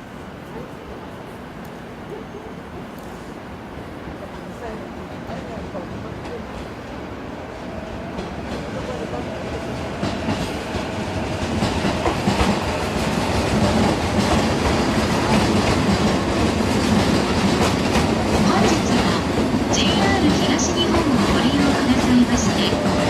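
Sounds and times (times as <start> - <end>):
train wheels clattering on rails: 7.6 - 23.0.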